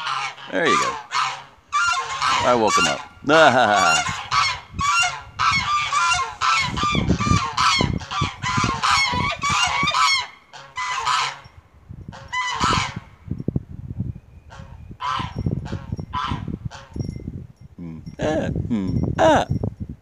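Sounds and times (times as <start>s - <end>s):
geese honking: 0.0s - 11.5s, 12.2s - 13.0s, 14.5s - 16.9s.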